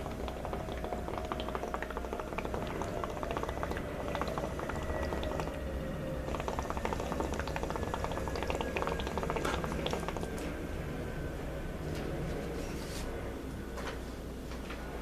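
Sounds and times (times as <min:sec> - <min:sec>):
water bubbling in water pipe: 0:00.0 - 0:10.6.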